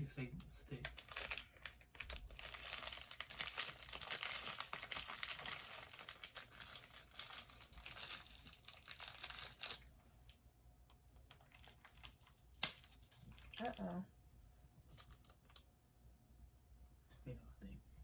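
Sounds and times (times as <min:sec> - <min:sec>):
plastic wrapper crinkling: 0:00.7 - 0:09.9, 0:11.2 - 0:13.9, 0:14.9 - 0:15.6.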